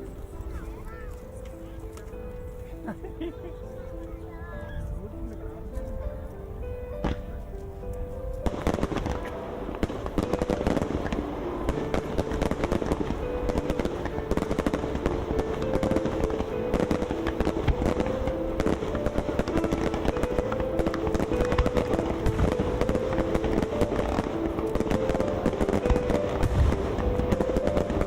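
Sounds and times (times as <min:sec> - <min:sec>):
background music: 0:00.0 - 0:28.0
fireworks crackling and popping: 0:07.0 - 0:28.0.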